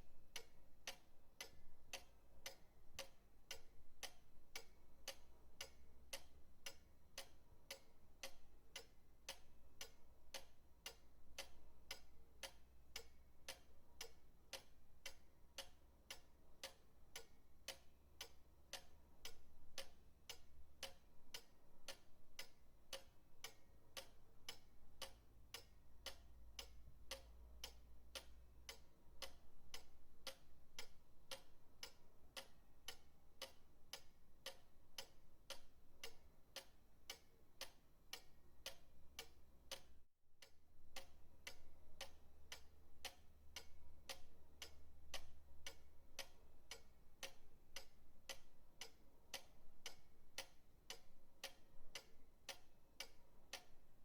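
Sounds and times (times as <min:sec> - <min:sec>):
pendulum clock ticking: 0:00.0 - 0:54.0.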